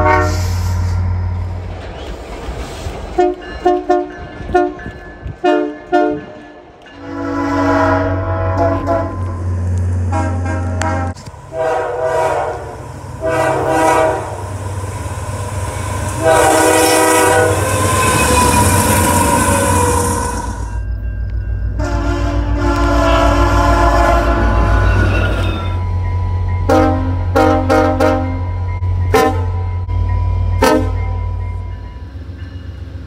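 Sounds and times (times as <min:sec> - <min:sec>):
locomotive air horn blasts: 0:00.0 - 0:01.0, 0:03.2 - 0:06.4, 0:07.0 - 0:09.4, 0:10.1 - 0:14.6, 0:16.1 - 0:20.7, 0:21.8 - 0:25.1, 0:26.7 - 0:28.5, 0:29.1 - 0:29.7, 0:30.6 - 0:31.1
moving train noise: 0:00.0 - 0:33.0.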